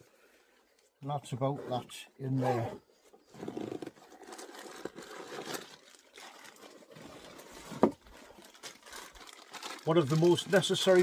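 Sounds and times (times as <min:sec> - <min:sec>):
gear rustling in a pack: 0:02.3 - 0:11.0.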